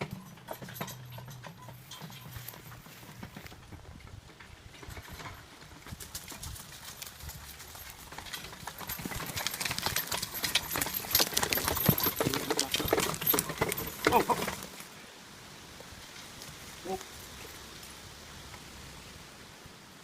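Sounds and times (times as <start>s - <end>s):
horse hooves clopping: 0.0s - 15.0s.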